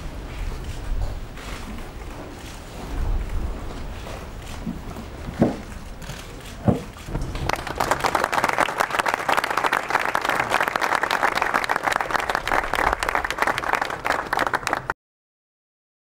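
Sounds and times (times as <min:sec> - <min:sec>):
crowd applauding: 0:07.0 - 0:15.0.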